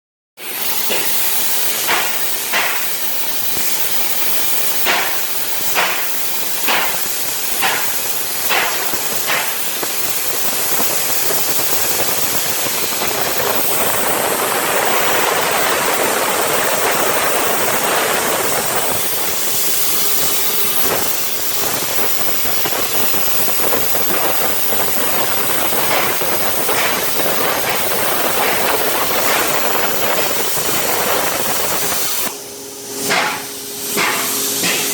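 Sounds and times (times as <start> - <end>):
plasma cutter arc hissing: 0.4 - 34.9.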